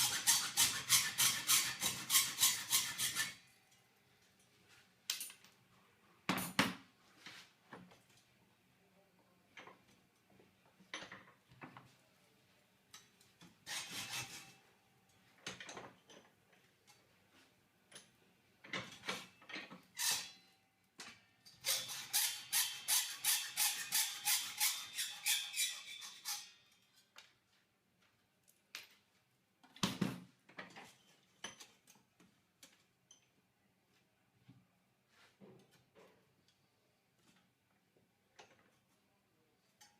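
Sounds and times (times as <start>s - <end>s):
hacksaw cutting metal: 0.0s - 3.4s, 13.6s - 14.6s, 19.9s - 20.5s, 21.6s - 26.6s.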